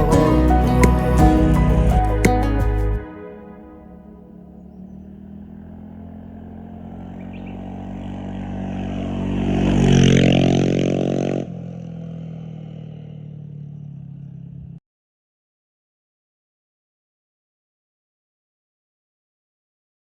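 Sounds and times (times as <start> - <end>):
quiet engine hum: 0.0 - 9.7
motorcycle passing by: 0.0 - 14.8.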